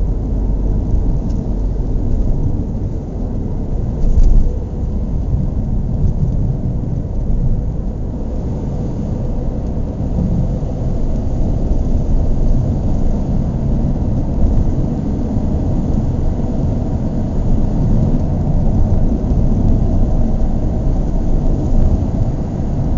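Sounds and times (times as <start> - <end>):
car engine idling: 0.0 - 22.9.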